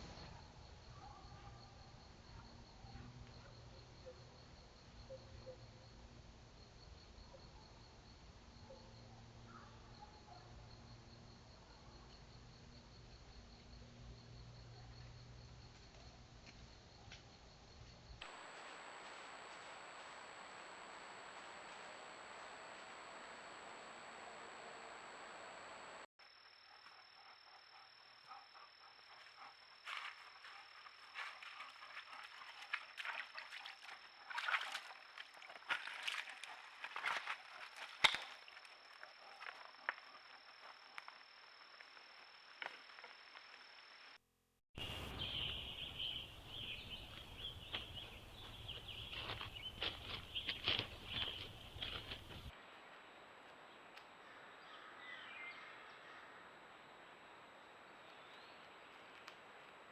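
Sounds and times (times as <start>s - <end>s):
faint high-pitched whine: 0.0s - 35.0s
insects chirping: 0.0s - 44.2s, 44.8s - 52.5s
background hiss: 44.8s - 54.5s.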